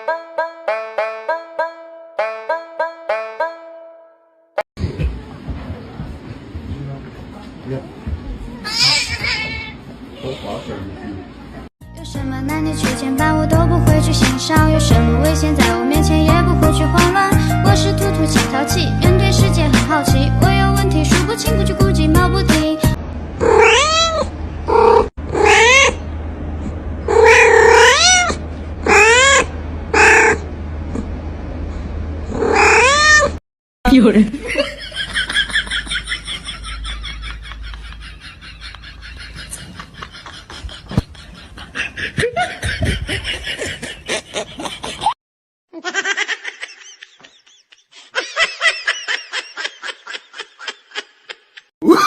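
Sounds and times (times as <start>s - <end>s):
cat meowing: 23.4s - 26.0s, 27.1s - 30.4s, 32.3s - 33.4s
people laughing: 34.4s - 45.2s, 45.8s - 51.7s.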